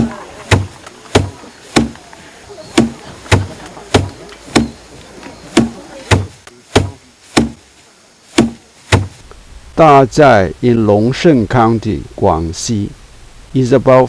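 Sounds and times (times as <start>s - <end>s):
rice stalks whacking wooden bin: 0.0s - 10.8s.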